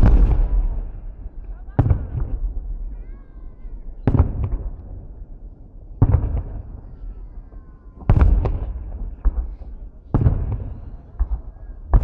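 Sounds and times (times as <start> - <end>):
fireworks bangs: 0.0 - 5.2, 6.0 - 12.0
small firework cracks: 6.0 - 12.0.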